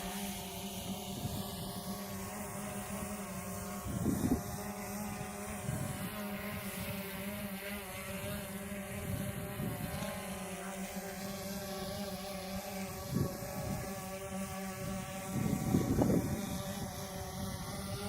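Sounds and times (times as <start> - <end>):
drone propellers buzzing: 0.0 - 18.0
wind gust on microphone: 3.8 - 4.6, 14.8 - 16.9.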